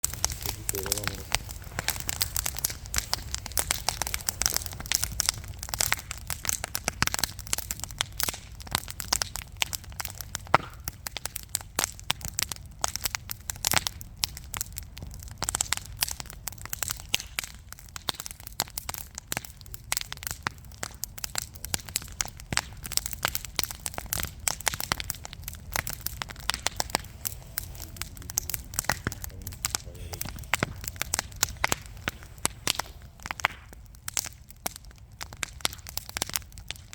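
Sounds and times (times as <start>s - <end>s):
fire crackling and popping: 0.0s - 36.9s
low rumble of flames: 0.0s - 36.9s.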